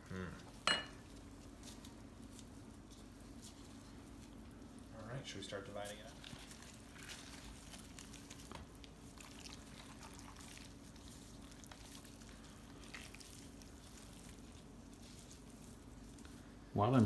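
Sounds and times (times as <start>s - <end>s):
wet handling of meat: 0.4s - 17.0s.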